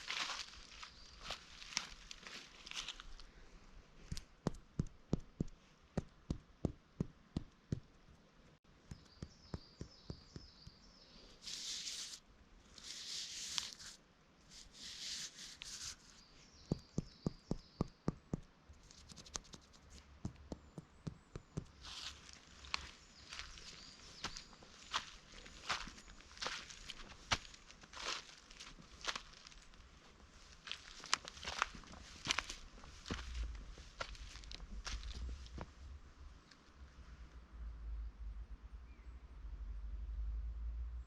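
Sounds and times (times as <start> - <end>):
footsteps on forest path: 0.0 - 3.3, 11.4 - 12.2, 21.1 - 35.7
birds chirping: 8.8 - 12.2, 15.8 - 18.2, 20.3 - 29.7.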